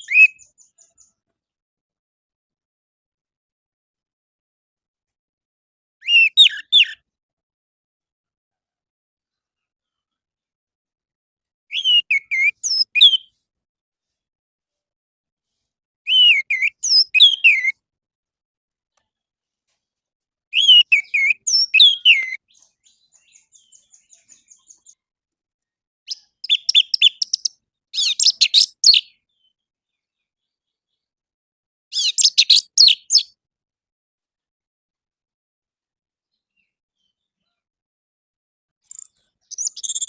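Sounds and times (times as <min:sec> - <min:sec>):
thrush singing whistled notes: 0:00.0 - 0:00.5, 0:11.7 - 0:13.2, 0:20.6 - 0:22.4.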